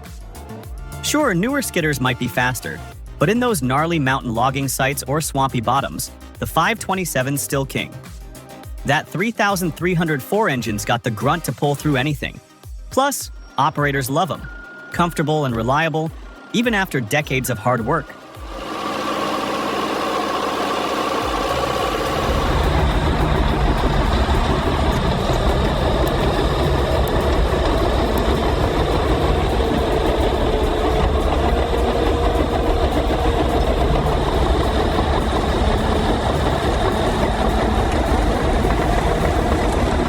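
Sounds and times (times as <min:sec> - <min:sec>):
diesel engine running: 0:18.0 - 0:40.0.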